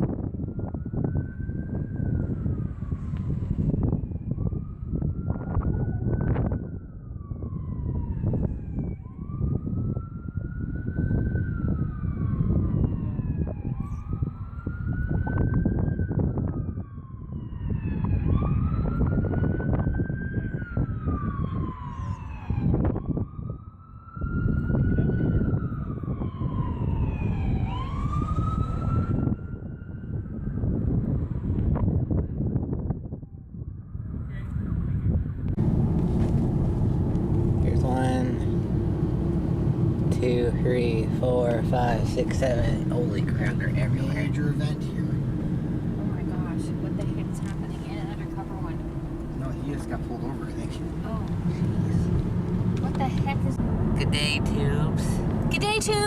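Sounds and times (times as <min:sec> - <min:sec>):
police sirens wailing: 0:00.1 - 0:32.5, 0:33.5 - 0:56.0
steady low rumble: 0:24.2 - 0:56.0.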